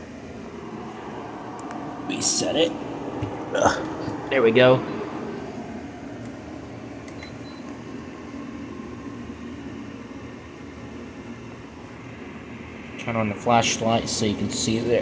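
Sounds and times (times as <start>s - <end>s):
air conditioner fan running: 0.0s - 15.0s.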